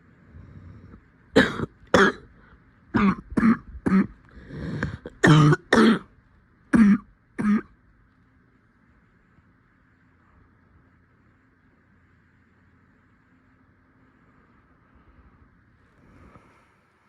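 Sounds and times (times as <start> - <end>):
sharp coughs: 1.4 - 2.3, 3.0 - 6.1, 6.8 - 7.7.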